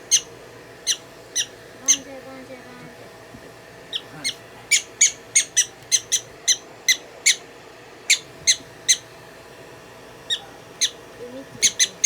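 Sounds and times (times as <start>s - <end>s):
prairie dog chirping: 0.0s - 2.2s, 3.9s - 9.1s, 10.2s - 12.0s.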